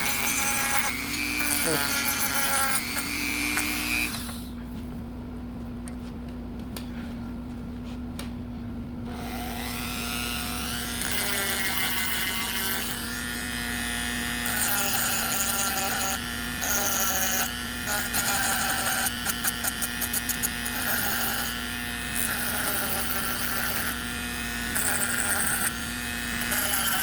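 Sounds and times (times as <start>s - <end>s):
electric power tool whining: 0.0s - 4.6s, 9.1s - 27.0s.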